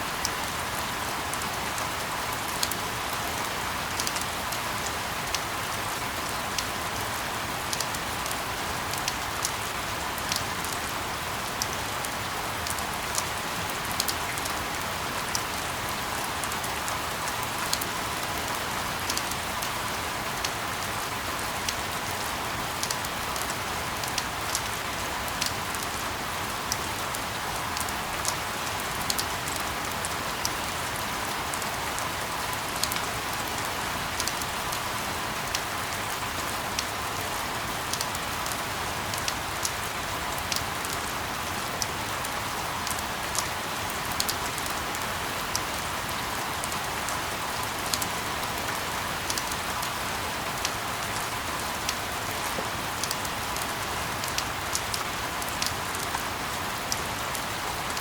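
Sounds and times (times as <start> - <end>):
steady rain hiss: 0.0 - 58.0
raindrop ticks: 51.9 - 56.3.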